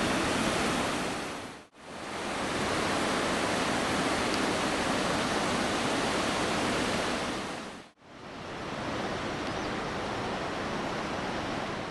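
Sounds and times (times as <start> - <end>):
surf breaking on shore: 0.0 - 7.9
wind: 0.0 - 11.9.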